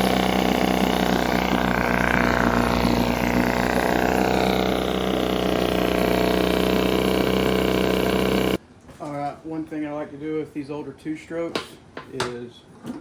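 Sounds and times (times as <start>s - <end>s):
outboard motor idling: 0.0s - 8.6s.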